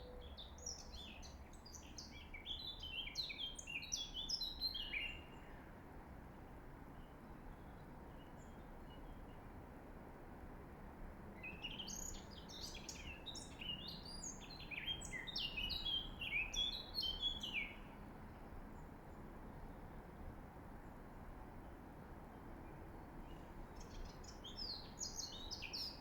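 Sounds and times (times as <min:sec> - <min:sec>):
low background hiss: 0:00.0 - 0:26.0
songbird chirps and trills: 0:11.4 - 0:18.1, 0:21.6 - 0:26.0.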